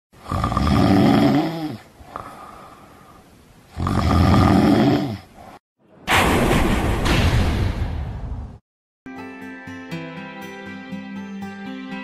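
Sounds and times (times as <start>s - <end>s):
person snoring: 0.2s - 2.9s, 3.7s - 5.4s.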